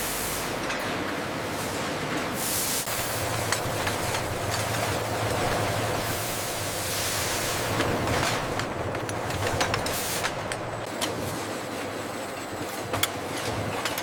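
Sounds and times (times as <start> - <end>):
low machine hum: 2.9 - 10.9
machinery rushing noise: 2.9 - 10.9.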